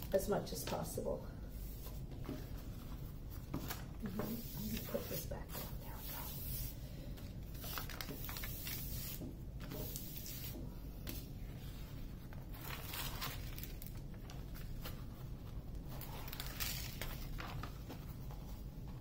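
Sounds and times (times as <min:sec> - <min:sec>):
low steady hum: 0:00.0 - 0:19.0
canvas and plastic rustling: 0:12.4 - 0:19.0.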